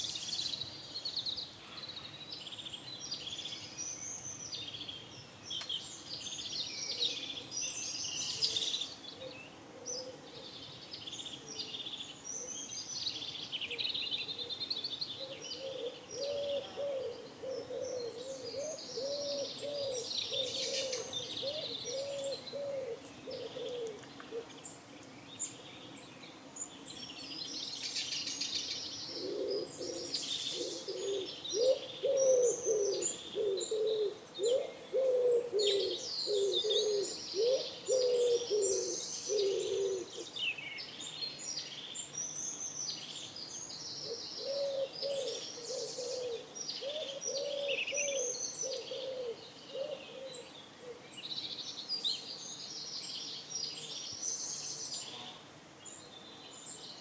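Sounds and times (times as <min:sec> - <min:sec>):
songbirds chirping: 0:00.0 - 0:57.0
pigeons cooing: 0:15.3 - 0:24.5, 0:29.1 - 0:40.3, 0:44.0 - 0:51.0.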